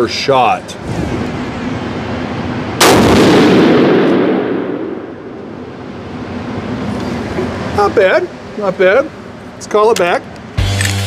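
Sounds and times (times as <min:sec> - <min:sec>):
rifle shot with reverberation: 0:02.8 - 0:05.1.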